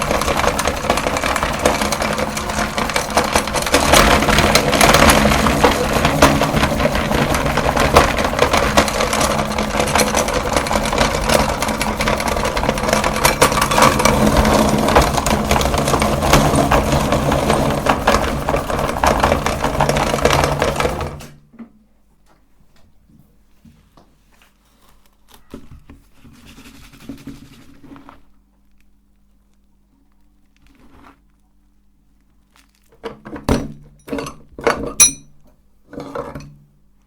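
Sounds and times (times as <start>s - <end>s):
meat grinder motor hum: 0.0s - 21.3s.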